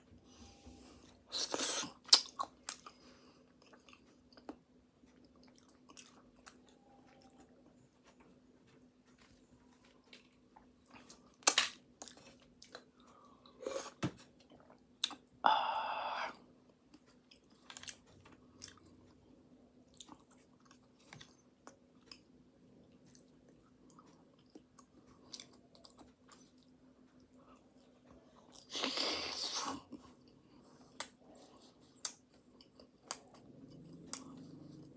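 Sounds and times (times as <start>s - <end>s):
faint steady hum: 0.0s - 34.9s
person chewing pastry: 0.8s - 34.9s.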